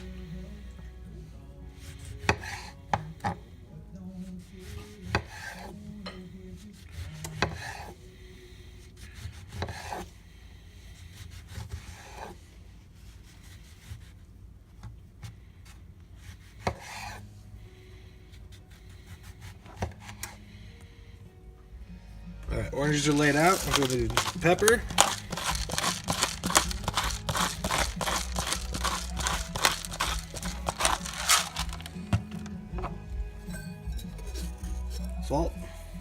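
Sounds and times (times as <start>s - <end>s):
knife slicing oranges: 4.8s - 5.8s, 9.0s - 10.1s, 16.2s - 17.2s, 22.9s - 32.2s.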